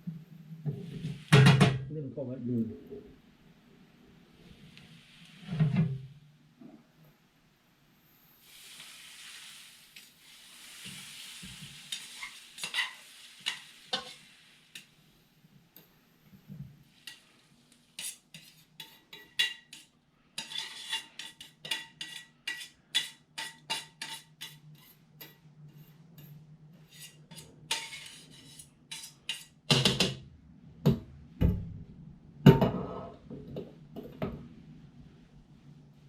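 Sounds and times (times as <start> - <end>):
utensil scraping against pan: 8.4 - 15.0, 16.8 - 30.2.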